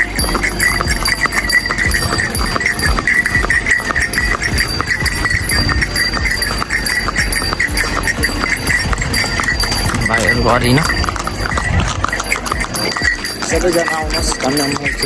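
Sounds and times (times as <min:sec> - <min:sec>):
harness bells jingling: 0:00.0 - 0:15.0
hooves knocking: 0:00.0 - 0:15.0.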